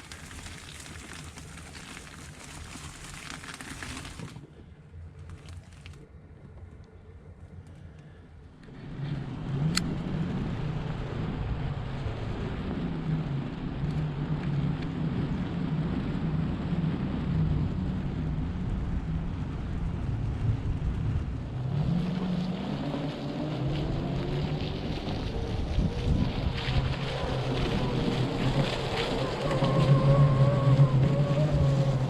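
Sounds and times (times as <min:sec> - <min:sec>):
tyre noise on rough ground: 0:00.0 - 0:04.5, 0:05.2 - 0:06.0.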